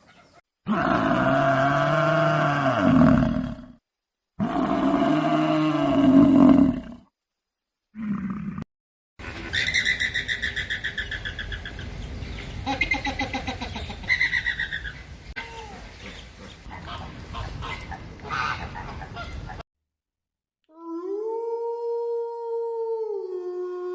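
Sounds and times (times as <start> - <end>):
birds chattering calls: 9.2 - 19.6.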